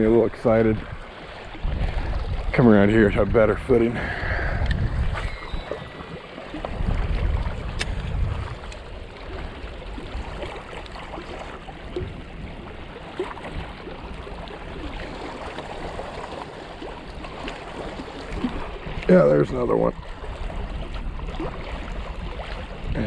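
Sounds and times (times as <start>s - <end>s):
wind buffeting microphone: 0.0s - 16.2s, 16.8s - 23.0s
lapping water: 3.8s - 23.0s
faint clicks: 4.6s - 4.8s.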